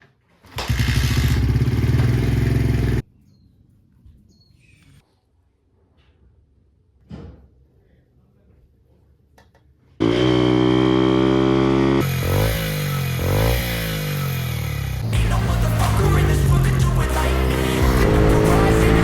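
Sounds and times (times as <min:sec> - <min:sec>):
small engine running: 0:00.6 - 0:03.0, 0:10.0 - 0:19.0.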